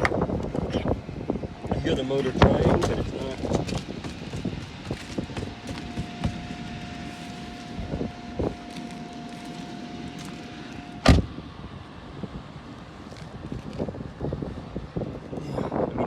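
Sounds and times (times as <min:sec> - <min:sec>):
loud thump: 0:11.0 - 0:11.3
wind on microphone: 0:13.3 - 0:16.0.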